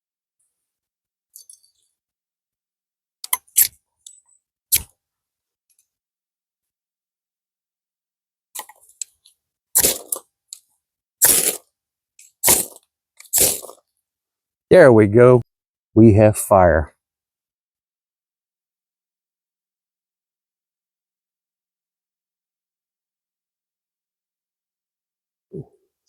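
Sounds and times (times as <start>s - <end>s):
scraping striker lighting tinder: 8.6s - 11.6s.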